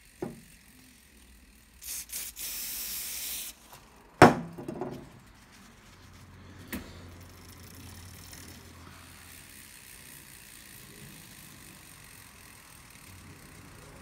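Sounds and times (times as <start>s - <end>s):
bike wheel whirring: 0.0s - 14.0s
tissue rubbing on brake disc: 5.0s - 8.8s.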